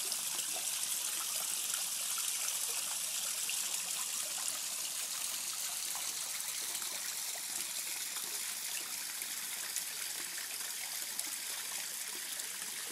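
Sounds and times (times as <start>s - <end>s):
water splashing over waterfall: 0.0s - 12.9s.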